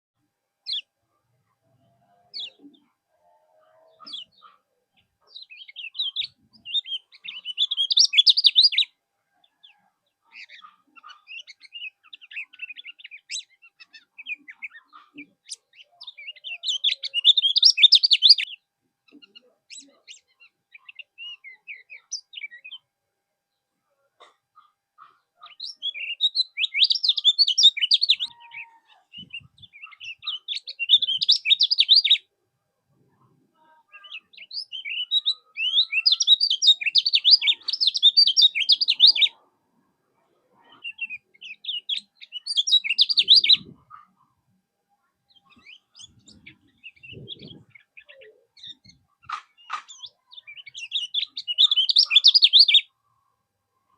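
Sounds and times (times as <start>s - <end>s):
bird chirps: 0.6s - 0.9s, 1.6s - 22.9s, 24.2s - 32.3s, 33.1s - 39.5s, 40.6s - 44.3s, 45.0s - 53.0s
songbird twittering: 5.3s - 8.9s, 9.5s - 22.8s, 25.4s - 32.2s, 34.0s - 39.4s, 40.8s - 44.0s, 45.3s - 52.9s.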